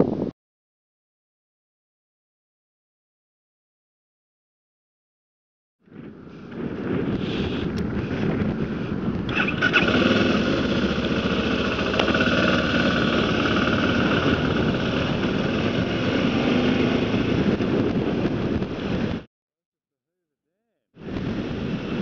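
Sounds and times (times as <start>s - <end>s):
wind rushing over microphone: 0.0s - 0.3s, 5.8s - 19.3s, 21.0s - 22.0s
motorcycle engine running: 7.8s - 19.3s.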